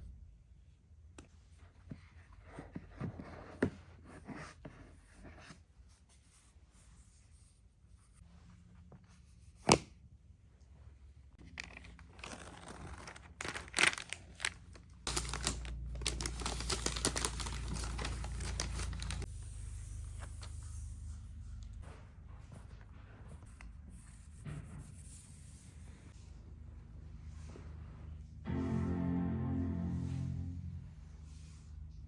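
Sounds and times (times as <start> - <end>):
packaging tearing and crinkling: 11.5 - 19.3.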